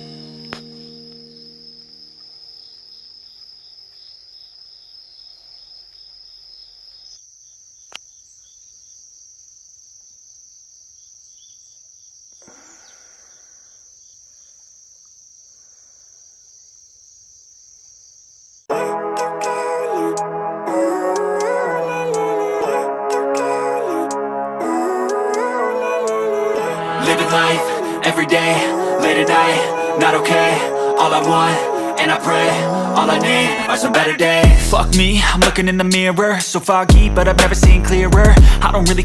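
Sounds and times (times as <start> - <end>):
crickets trilling: 0.0 - 18.7, 35.2 - 37.2.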